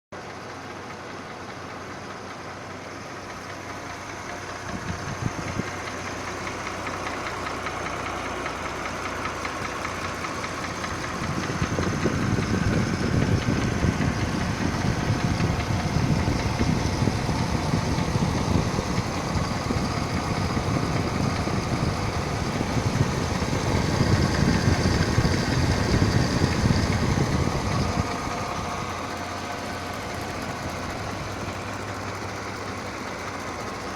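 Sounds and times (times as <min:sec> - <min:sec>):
car engine clattering: 0:00.2 - 0:33.9.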